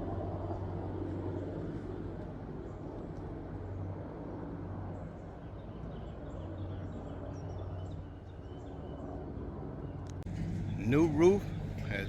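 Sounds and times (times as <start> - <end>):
low engine hum: 9.9 - 12.0.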